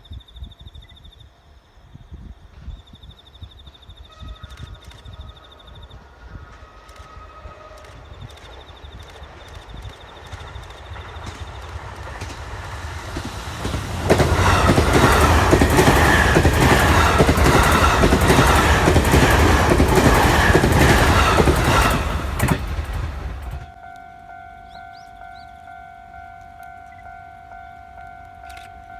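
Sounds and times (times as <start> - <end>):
electric train passing: 3.3 - 28.9
wheels clacking over rail joints: 8.4 - 23.7.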